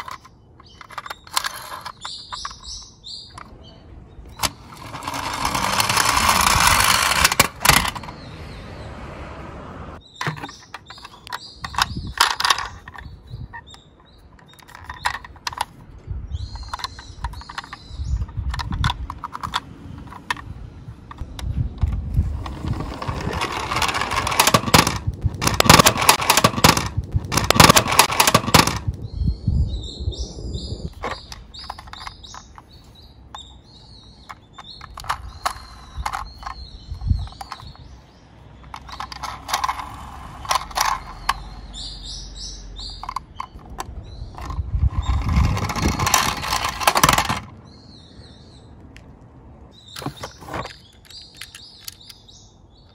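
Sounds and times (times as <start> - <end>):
toy cars rolling down track: 0.0 - 2.6, 4.4 - 8.1, 10.8 - 13.0, 22.3 - 28.9, 38.7 - 41.4, 44.4 - 47.5
sharp clicks and knocks: 4.3 - 8.2, 10.2 - 15.9, 16.6 - 29.0, 31.0 - 33.5, 38.6 - 41.5, 42.9 - 47.6.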